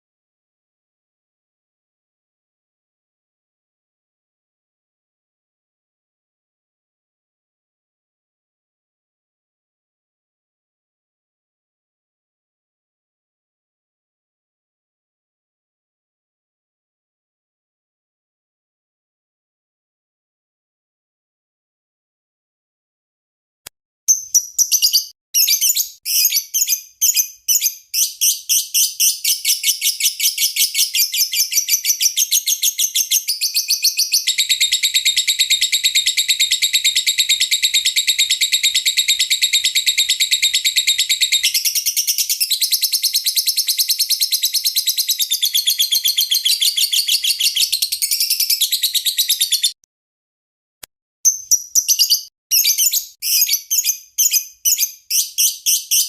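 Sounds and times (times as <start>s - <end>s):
bird chirping and trilling: 24.1s - 49.8s, 51.3s - 56.0s.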